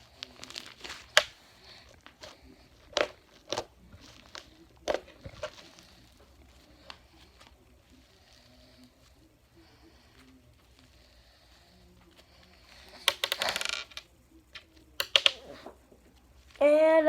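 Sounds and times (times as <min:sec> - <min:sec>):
slime popping and crackling: 0:12.8 - 0:14.1, 0:15.0 - 0:15.4.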